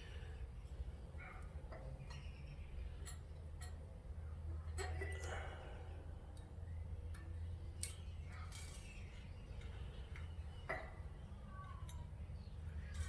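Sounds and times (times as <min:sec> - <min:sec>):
steady low hum: 0:00.0 - 0:13.0
small metal parts clinking: 0:07.8 - 0:09.2.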